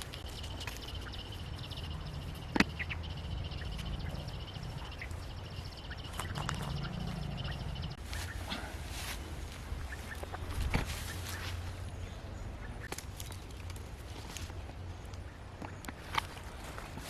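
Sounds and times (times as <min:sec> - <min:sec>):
low rumble: 0:00.0 - 0:08.1.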